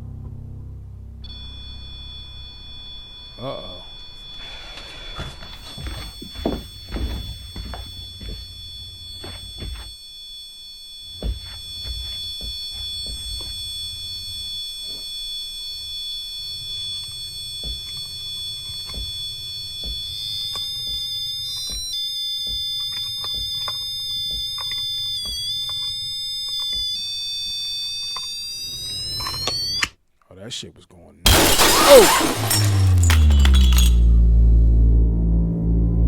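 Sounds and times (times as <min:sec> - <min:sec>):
low rumble: 0:32.8 - 0:36.0.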